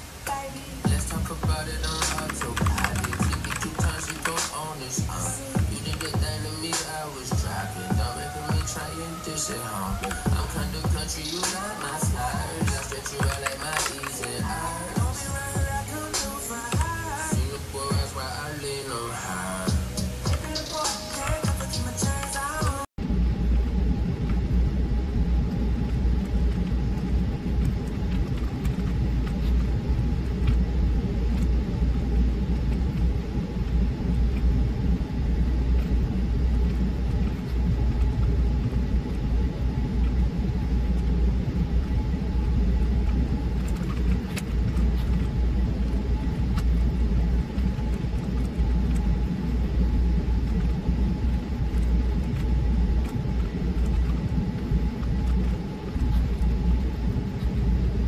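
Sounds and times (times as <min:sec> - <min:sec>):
faint constant hum: 0:00.0 - 0:58.0
steady low rumble: 0:00.0 - 0:58.0
faint clicks: 0:11.2 - 0:15.5.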